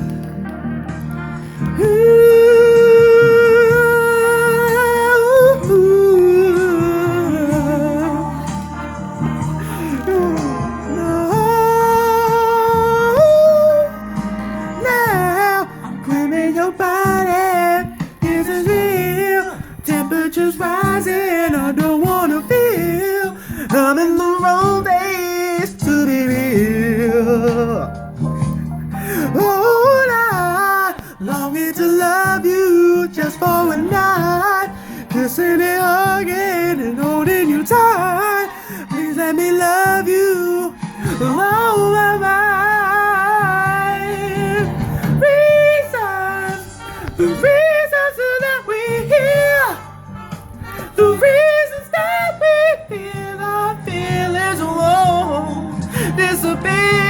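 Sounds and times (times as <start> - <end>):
guitar and bass accompaniment: 0.0 - 57.0
person singing with vibrato: 0.0 - 57.0.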